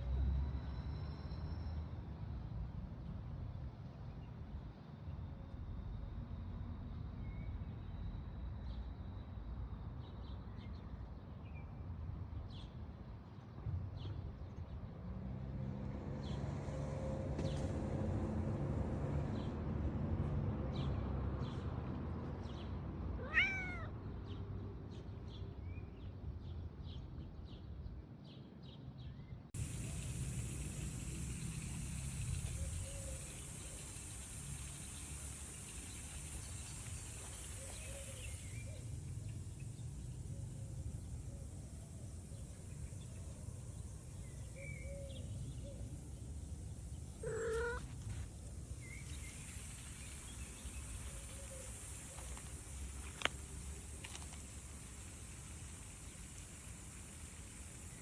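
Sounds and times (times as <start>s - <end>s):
cat meow: 23.2s - 24.0s, 47.2s - 47.9s
steady hiss: 29.6s - 58.0s.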